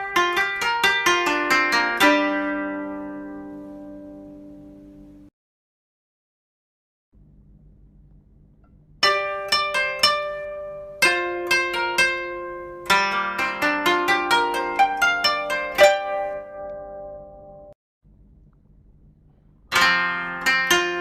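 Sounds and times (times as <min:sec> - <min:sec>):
plucked string music: 0:00.0 - 0:05.3, 0:09.0 - 0:17.8, 0:19.7 - 0:21.0.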